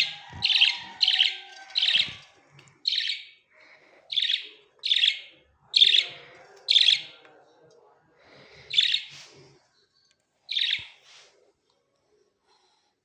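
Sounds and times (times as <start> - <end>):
pet bird chirping: 0.0 - 3.4, 4.1 - 7.2, 8.7 - 9.1, 10.5 - 11.0.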